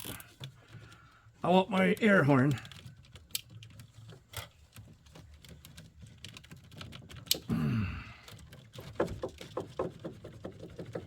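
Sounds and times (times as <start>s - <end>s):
cable ties clicking: 1.8s - 7.5s.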